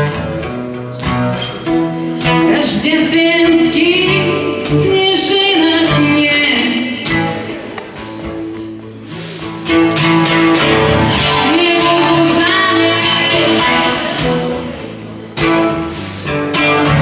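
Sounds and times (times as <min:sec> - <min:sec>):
acoustic guitar strumming: 0:00.0 - 0:17.0
person singing: 0:01.8 - 0:07.6, 0:10.6 - 0:17.0.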